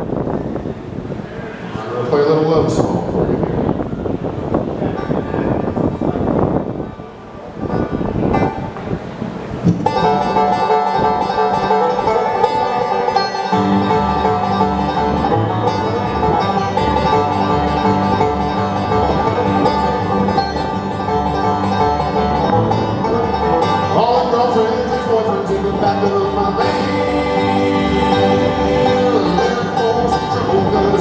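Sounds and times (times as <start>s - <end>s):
banjo picking: 7.6s - 31.0s
guitar: 7.7s - 31.0s
bass line: 9.7s - 31.0s.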